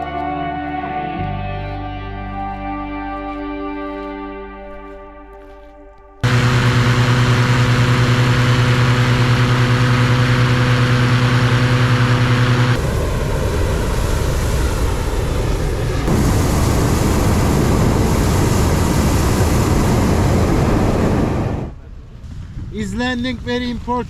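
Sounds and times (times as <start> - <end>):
inflation fan engine hum: 6.2 - 21.8
rush of air: 12.8 - 22.8.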